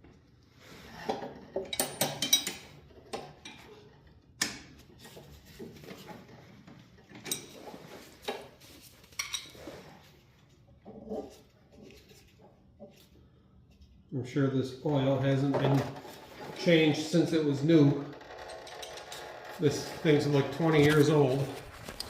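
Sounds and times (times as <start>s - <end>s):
metal tools clinking on metal: 1.6s - 2.8s.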